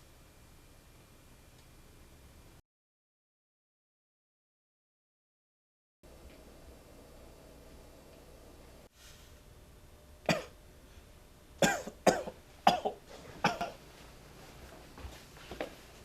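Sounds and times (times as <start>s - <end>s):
person coughing: 10.3s - 10.6s, 11.6s - 13.8s.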